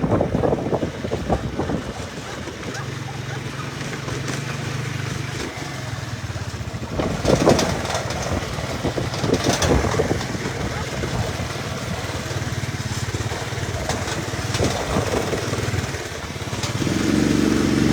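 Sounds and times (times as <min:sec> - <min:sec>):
vehicle engine humming: 0:00.0 - 0:17.9.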